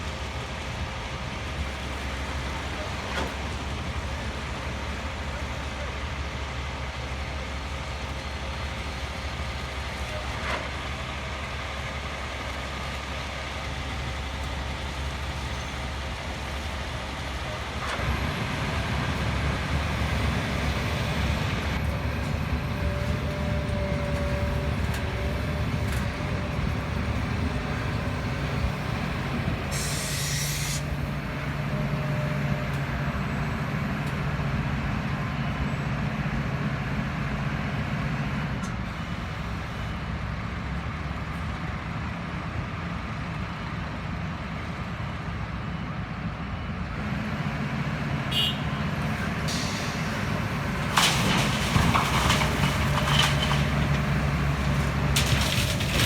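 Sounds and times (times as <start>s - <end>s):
heavy diesel engines running: 0.0s - 56.0s
short sharp hiss of air: 29.7s - 30.9s.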